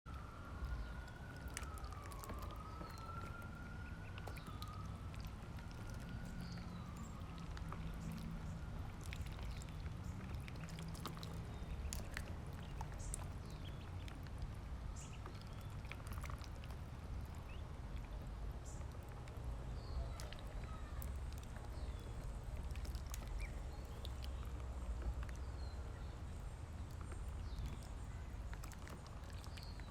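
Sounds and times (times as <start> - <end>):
siren wailing: 0.1 - 9.4
low steady rumble: 0.1 - 29.9
ducklings peeping: 0.7 - 14.3, 15.0 - 19.1, 19.8 - 24.6, 26.8 - 29.9.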